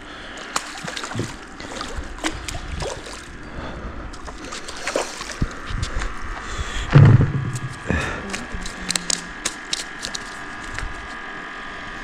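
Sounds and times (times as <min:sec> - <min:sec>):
water splashing and dripping: 0:00.2 - 0:03.4, 0:04.1 - 0:06.1
sharp clicks and knocks: 0:06.9 - 0:07.8.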